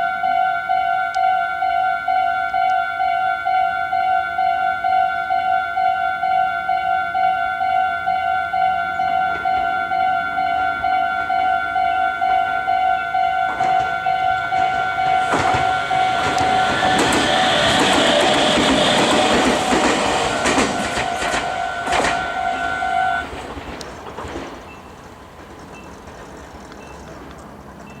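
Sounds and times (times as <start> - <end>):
level crossing warning bell: 0.0 - 23.2
train wheels clacking over rail joints: 13.3 - 28.0.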